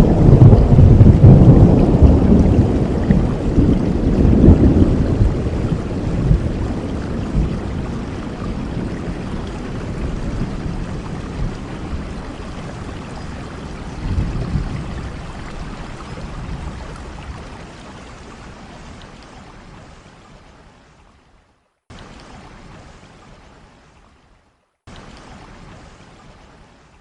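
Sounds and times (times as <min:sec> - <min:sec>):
rolling thunder: 0:00.0 - 0:17.2
steady rain: 0:00.0 - 0:27.0.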